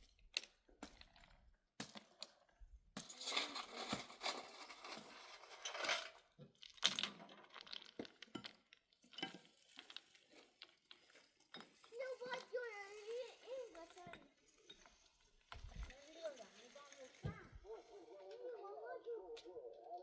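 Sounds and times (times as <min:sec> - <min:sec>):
rustling crunching scraping: 0:03.0 - 0:06.3.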